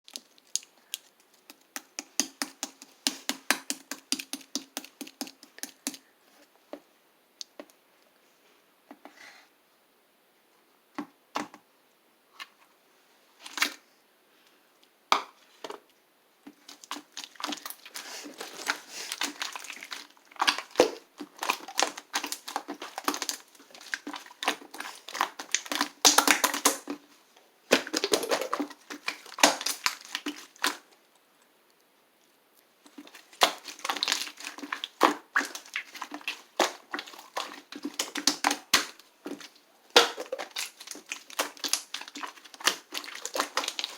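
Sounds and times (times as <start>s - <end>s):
slime squishing and popping: 16.7s - 27.0s, 27.7s - 30.9s, 32.9s - 43.9s.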